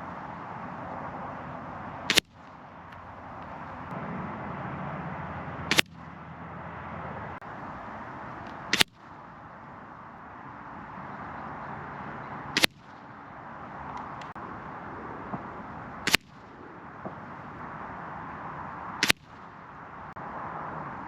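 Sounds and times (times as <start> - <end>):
air rifle shots: 1.8 - 4.0, 5.7 - 6.1, 8.2 - 9.4, 12.5 - 13.1, 15.2 - 17.6, 19.0 - 19.6.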